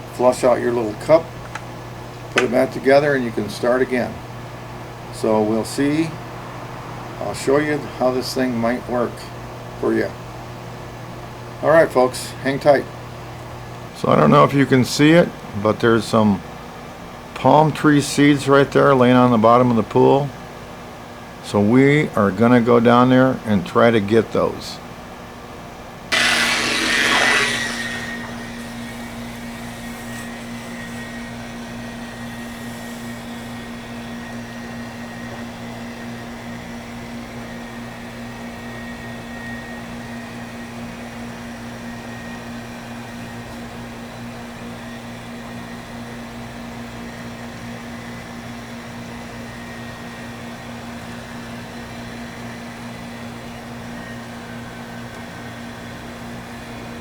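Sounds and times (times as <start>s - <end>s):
vacuum suction rush: 26.1s - 29.2s
vacuum motor humming: 26.1s - 34.4s.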